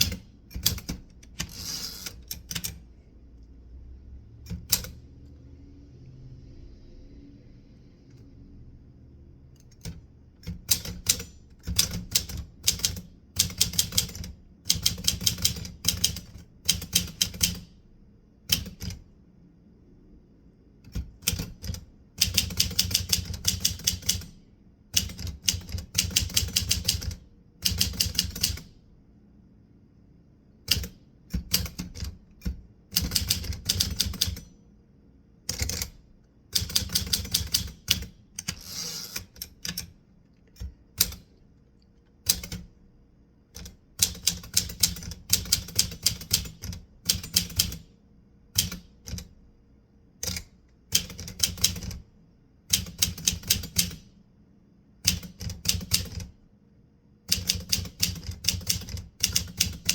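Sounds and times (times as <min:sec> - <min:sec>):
typewriter keystrokes: 0:00.0 - 0:02.8, 0:04.5 - 0:05.0, 0:09.7 - 0:17.7, 0:18.5 - 0:19.0, 0:20.9 - 0:28.7, 0:30.7 - 0:34.5, 0:35.5 - 0:39.9, 0:40.6 - 0:41.3, 0:42.2 - 0:42.7, 0:43.6 - 0:47.9, 0:48.6 - 0:49.3, 0:50.2 - 0:52.0, 0:52.7 - 0:54.0, 0:55.0 - 0:56.3, 0:57.3 - 0:59.9.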